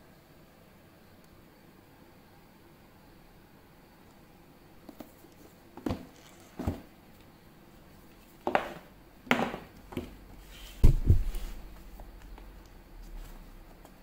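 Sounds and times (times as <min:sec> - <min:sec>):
low thump: 0:10.8 - 0:11.4.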